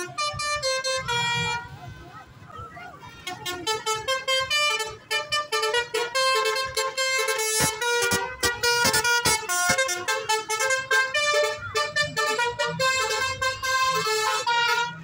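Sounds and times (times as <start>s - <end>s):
musical bus horn tune: 0.0s - 1.8s, 3.2s - 15.0s.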